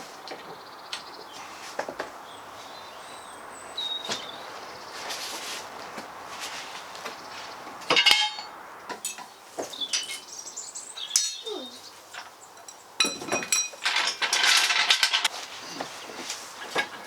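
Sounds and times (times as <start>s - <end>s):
metal tools clinking: 7.9s - 10.3s, 11.1s - 15.3s.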